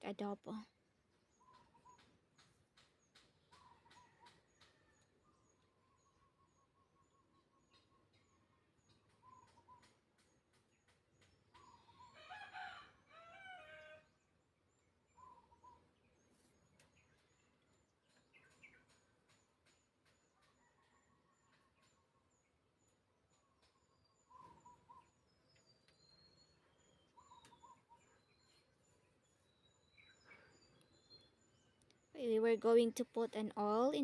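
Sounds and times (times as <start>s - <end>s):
rooster crowing: 12.1s - 14.1s
short bird calls: 26.5s - 28.7s.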